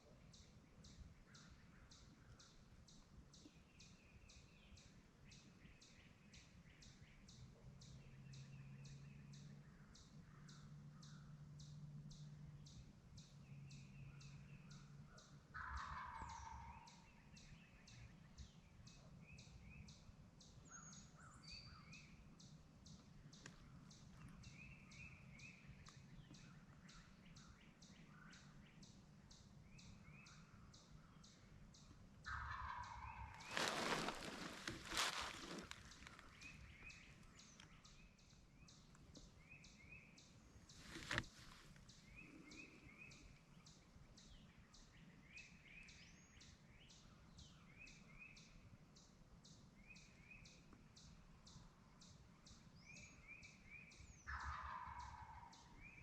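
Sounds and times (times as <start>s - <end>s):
faint woodland birdsong: 0.0s - 56.0s
wild turkey gobbling: 15.4s - 17.3s, 32.2s - 36.9s, 54.3s - 55.8s.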